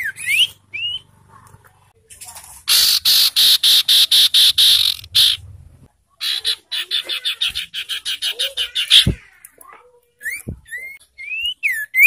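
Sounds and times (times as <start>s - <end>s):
bird giving rasping chatter: 2.6s - 5.4s, 6.2s - 9.4s.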